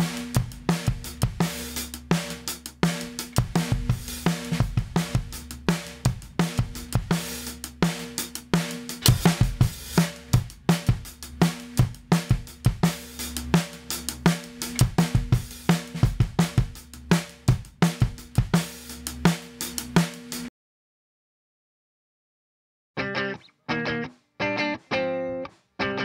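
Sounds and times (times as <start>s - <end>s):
drum kit playing a groove: 0.0s - 20.5s.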